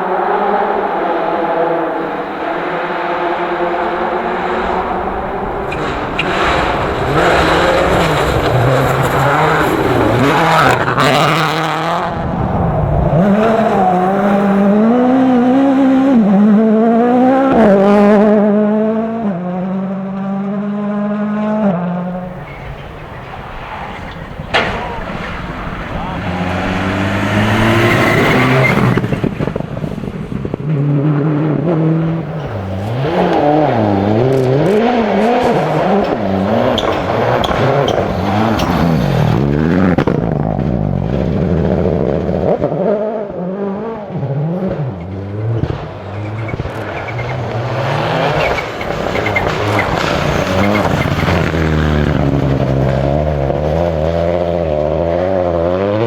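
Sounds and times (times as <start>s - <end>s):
rally car engine revving: 0.0s - 56.0s.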